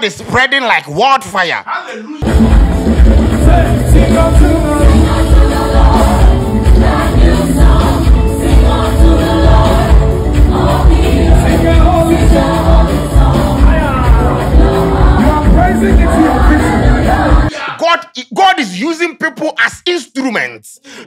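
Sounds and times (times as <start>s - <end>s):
band with heavy bass beat: 2.2s - 7.8s
choir singing gospel: 2.2s - 17.8s.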